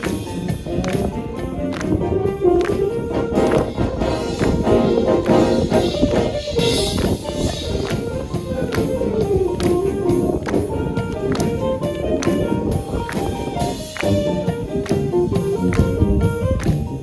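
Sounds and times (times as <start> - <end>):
marching band playing: 0.0 - 17.0.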